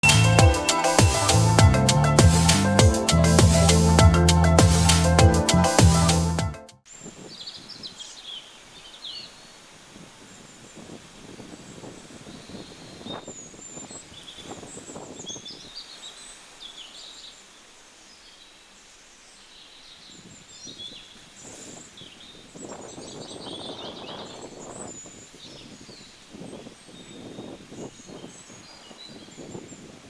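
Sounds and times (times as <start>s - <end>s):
outdoor background noise: 6.8s - 30.0s
birds chirping: 7.2s - 9.6s, 11.6s - 30.0s.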